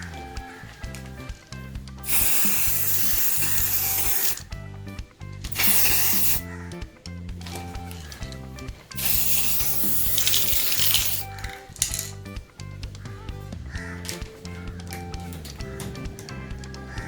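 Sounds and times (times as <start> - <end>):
background music with beat: 0.0 - 17.0
aerosol spray can hissing: 2.0 - 4.4, 5.5 - 6.4, 9.0 - 12.1.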